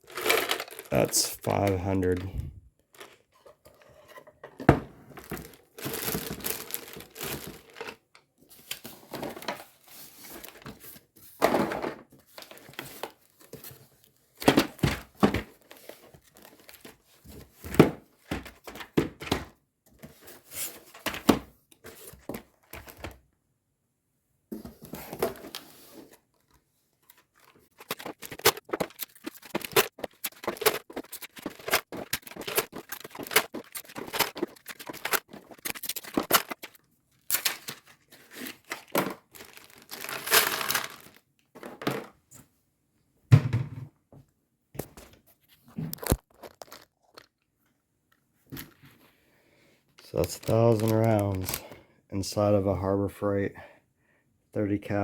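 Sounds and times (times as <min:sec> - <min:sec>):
cardboard tearing: 0:27.5 - 0:41.2.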